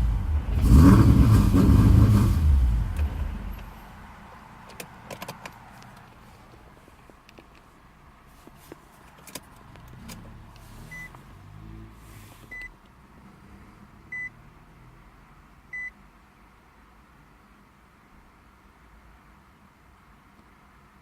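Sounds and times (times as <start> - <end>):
car warning chime beeping: 10.9 - 11.2, 12.5 - 12.8, 14.1 - 14.3, 15.7 - 16.0.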